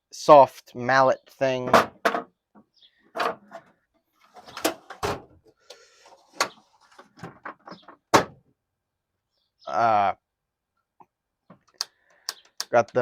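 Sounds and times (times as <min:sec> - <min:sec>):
drawers sliding: 0:03.2 - 0:05.4.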